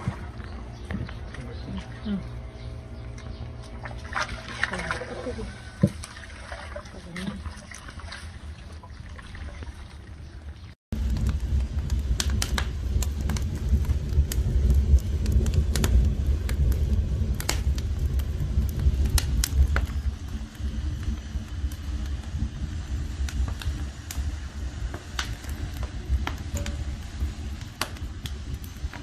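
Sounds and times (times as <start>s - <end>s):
fire crackling and popping: 10.9s - 29.0s
fire roaring: 10.9s - 29.0s.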